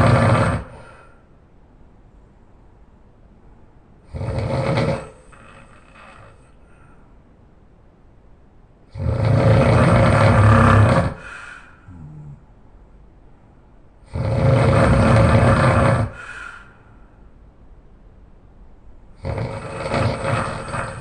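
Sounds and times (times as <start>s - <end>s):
person snoring loudly: 0.0s - 1.2s, 4.1s - 6.8s, 8.9s - 12.4s, 14.1s - 16.8s, 19.2s - 21.0s.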